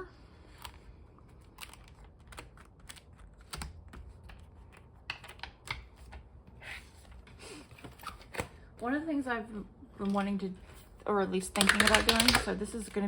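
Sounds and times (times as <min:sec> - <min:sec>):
plastic discs clicking and snapping: 0:00.5 - 0:06.3, 0:11.5 - 0:13.0.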